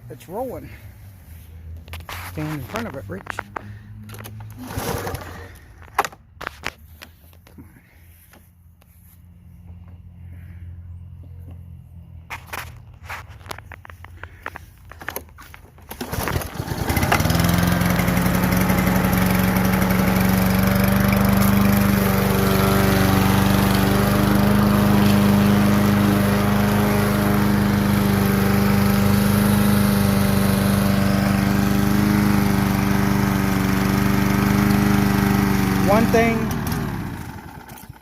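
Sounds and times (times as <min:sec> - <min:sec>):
lawn mower engine running: 0:00.2 - 0:10.6, 0:12.3 - 0:38.0
starter cord pull: 0:37.6 - 0:38.0.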